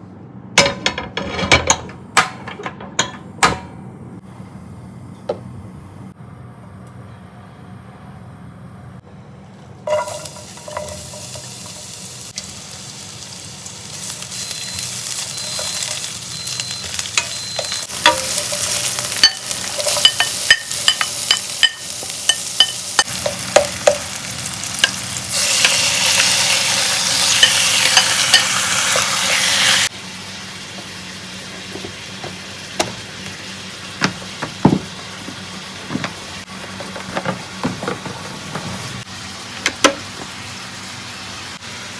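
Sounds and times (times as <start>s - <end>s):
food sizzling in a pan: 9.9s - 34.0s
utensil knocking against pan: 31.7s - 33.0s, 34.0s - 38.2s.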